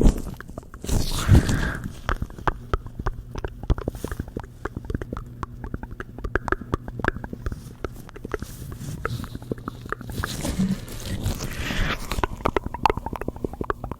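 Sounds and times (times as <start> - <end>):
gloved hands rubbing: 0.0 - 13.9.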